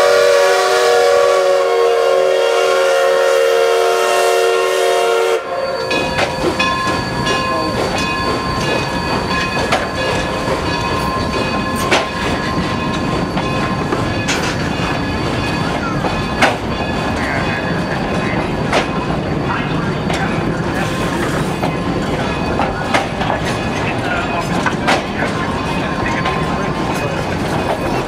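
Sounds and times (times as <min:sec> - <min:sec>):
train wheels rumbling on rail: 0:00.0 - 0:28.0
wheel squeal: 0:05.6 - 0:16.5
wheels clacking over rail joints: 0:05.9 - 0:28.0.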